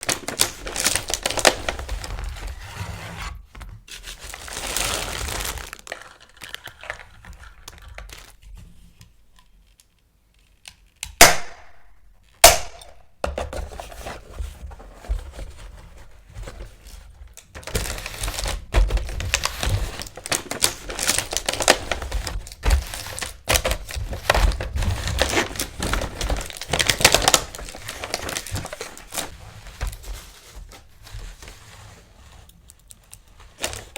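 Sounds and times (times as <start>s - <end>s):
packaging crinkling and tearing: 0.0s - 2.6s, 3.9s - 8.5s, 15.4s - 31.6s, 32.4s - 33.9s.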